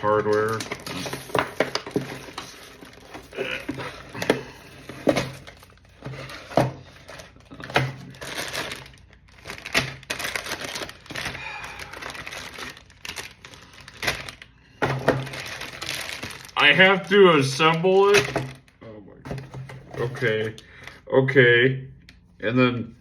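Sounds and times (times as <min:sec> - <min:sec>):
wrapping crinkling and tearing: 0:00.0 - 0:18.8
cardboard clicks and knocks: 0:00.4 - 0:06.9, 0:19.3 - 0:20.3.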